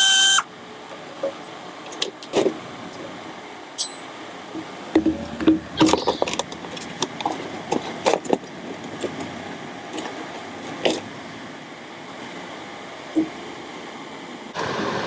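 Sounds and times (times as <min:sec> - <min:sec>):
loud metal clank: 0:03.8 - 0:08.1
metal tools clinking and knocking: 0:03.8 - 0:09.3.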